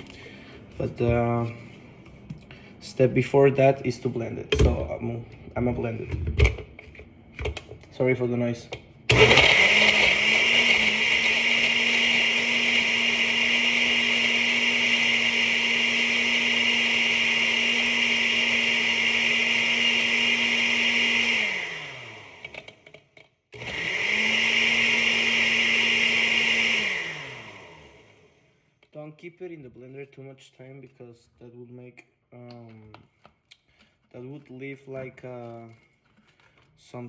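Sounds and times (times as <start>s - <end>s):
blender motor whirring: 9.1s - 23.0s, 23.6s - 28.5s.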